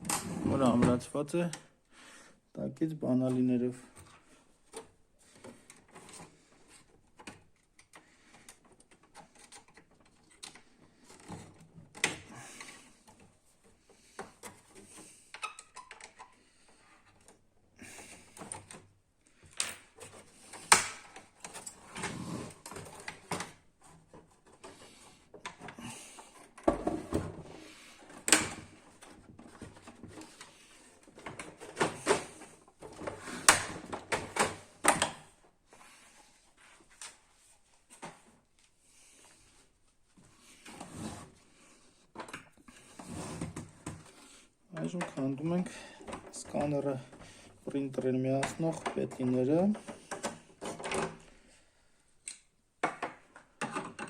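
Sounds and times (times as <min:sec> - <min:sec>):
soft handling noise: 0:18.1 - 0:51.4.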